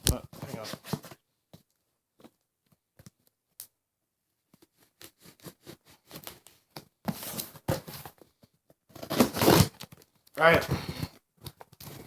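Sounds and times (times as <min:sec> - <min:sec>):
cardboard tearing and rustling: 0:08.9 - 0:11.1.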